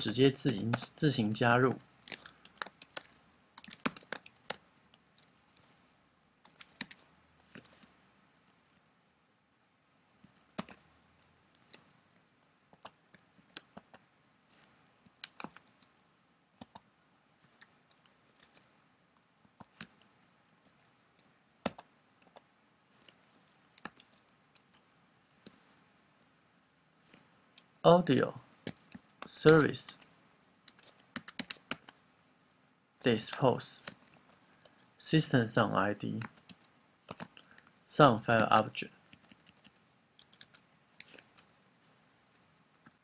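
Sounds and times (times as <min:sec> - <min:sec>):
keyboard and mouse clicks: 0:01.7 - 0:05.7, 0:06.4 - 0:08.8, 0:10.2 - 0:10.8, 0:12.7 - 0:14.0, 0:14.6 - 0:16.0, 0:16.6 - 0:18.7, 0:19.5 - 0:24.8, 0:28.6 - 0:32.0, 0:33.0 - 0:34.8, 0:36.1 - 0:37.8, 0:38.4 - 0:41.5.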